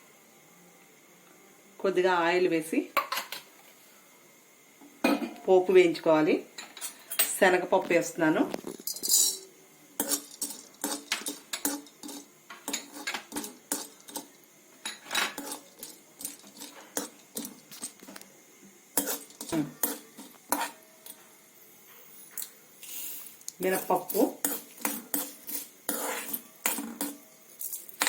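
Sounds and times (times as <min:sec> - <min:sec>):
lentils frying in oil: 0:01.8 - 0:28.0
metal spoon scraping a pan: 0:08.6 - 0:18.2, 0:19.0 - 0:21.2, 0:22.3 - 0:28.0.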